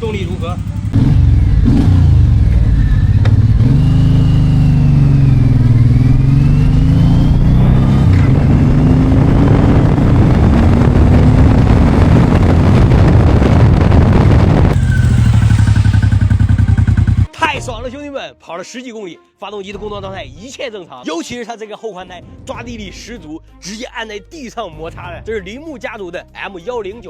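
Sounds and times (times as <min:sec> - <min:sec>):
motorcycle engine accelerating: 0:00.0 - 0:17.4
wind rush: 0:01.0 - 0:17.0.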